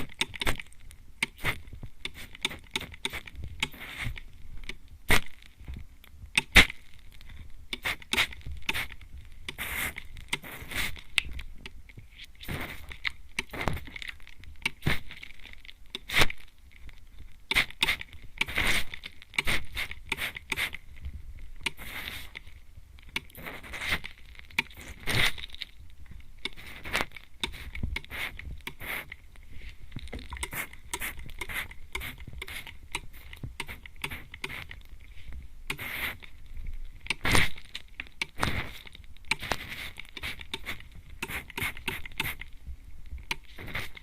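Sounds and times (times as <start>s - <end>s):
sharp clicks: 0.0s - 3.8s, 6.0s - 6.8s, 23.0s - 23.6s, 24.5s - 25.0s, 26.4s - 29.1s, 30.0s - 34.8s, 39.2s - 42.5s.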